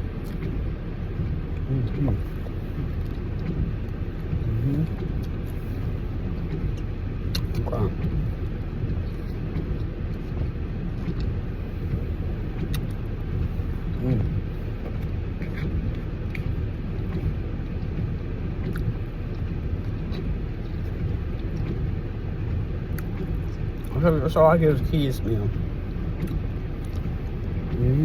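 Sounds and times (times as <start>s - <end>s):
car engine idling rumble: 0.0s - 28.0s.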